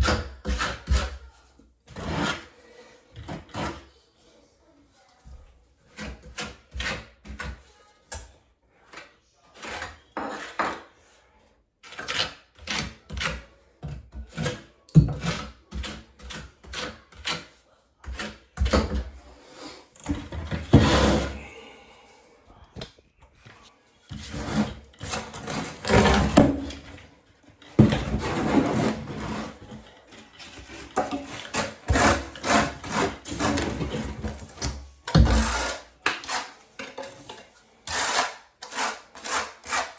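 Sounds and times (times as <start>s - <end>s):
trowel scraping mortar: 1.9s - 2.6s, 3.2s - 3.9s, 9.5s - 11.1s, 11.8s - 21.7s, 24.1s - 39.9s.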